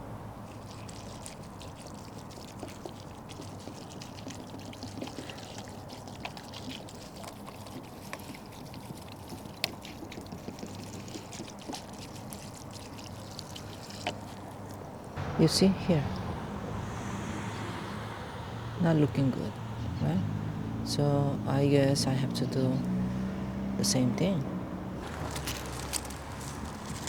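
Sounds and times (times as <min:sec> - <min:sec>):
water pouring onto soil: 0:00.4 - 0:14.9, 0:25.0 - 0:27.0.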